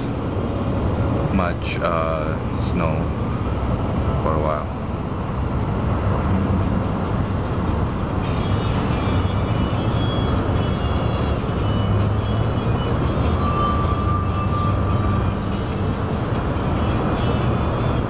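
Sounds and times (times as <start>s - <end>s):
city street traffic rumble: 0.0s - 18.0s
thin high squeal: 8.5s - 15.6s.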